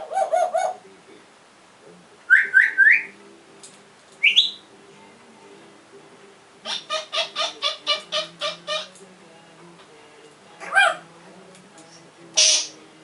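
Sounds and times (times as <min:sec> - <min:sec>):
parrot whistling: 0:04.2 - 0:04.6.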